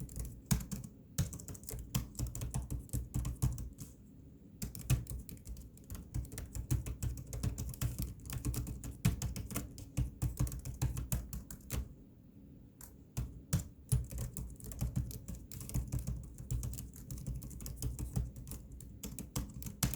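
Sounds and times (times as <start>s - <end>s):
small sharp clicks and taps: 12.8s - 19.9s.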